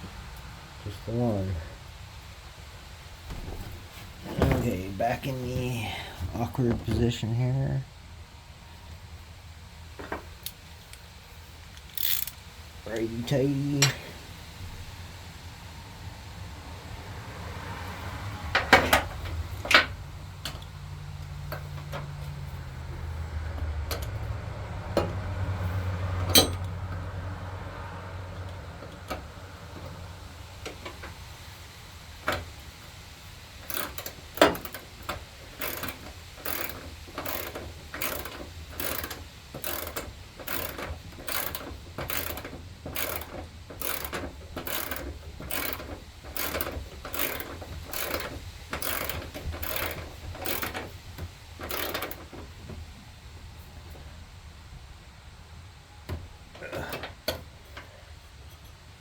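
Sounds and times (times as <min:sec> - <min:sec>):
ratchet wrench clicking: 0:11.7 - 0:12.4, 0:33.6 - 0:50.9, 0:51.6 - 0:52.2
sharp metal clicks and knocks: 0:26.2 - 0:26.8, 0:33.6 - 0:52.8.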